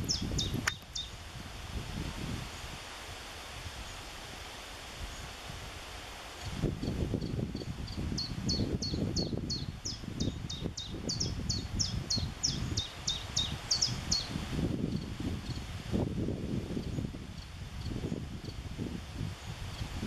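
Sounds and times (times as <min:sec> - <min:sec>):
songbird singing high notes: 0:00.0 - 0:01.2, 0:08.2 - 0:14.3.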